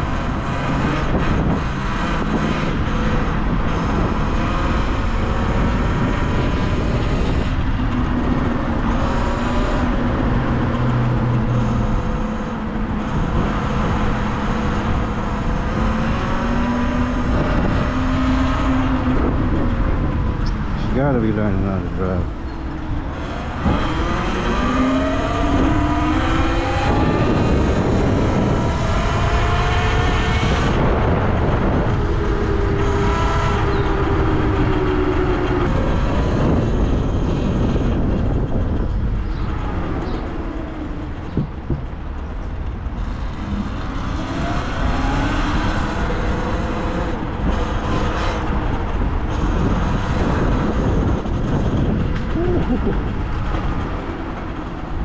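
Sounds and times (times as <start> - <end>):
low rumble: 30.6 - 55.0.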